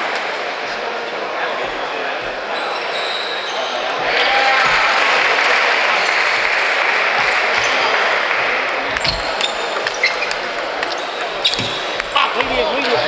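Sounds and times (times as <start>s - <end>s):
table tennis ball clicking: 3.8s - 13.0s.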